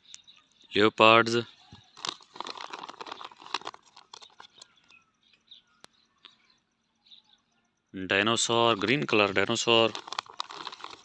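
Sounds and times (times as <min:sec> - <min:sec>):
plastic packaging crinkling: 0:01.9 - 0:04.7, 0:08.8 - 0:11.0
plastic figures clicking: 0:02.0 - 0:04.7, 0:08.8 - 0:11.0.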